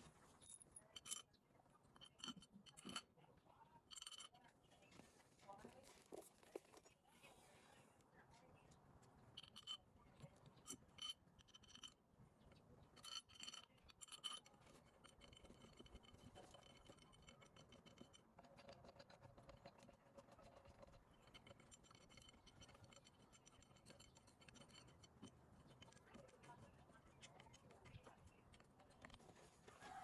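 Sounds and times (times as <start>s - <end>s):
light clinks: 0.4s - 3.1s, 12.9s - 18.2s
faint scratching: 3.8s - 30.0s.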